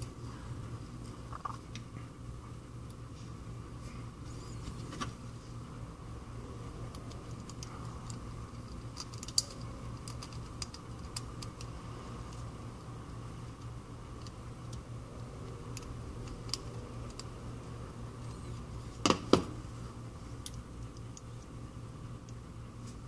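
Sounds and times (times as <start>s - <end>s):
steady low hum: 0.0s - 23.0s
small repair tools clicking: 6.9s - 11.7s.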